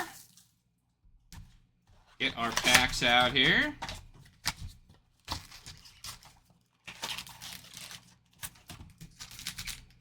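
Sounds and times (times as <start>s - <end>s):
foil card packs crinkling: 2.2s - 10.0s.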